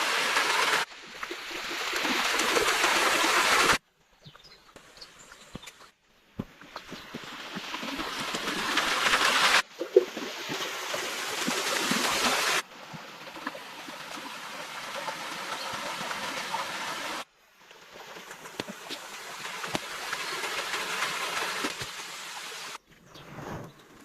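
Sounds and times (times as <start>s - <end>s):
stream water rushing: 0.0s - 3.8s, 7.2s - 17.3s, 18.2s - 22.8s.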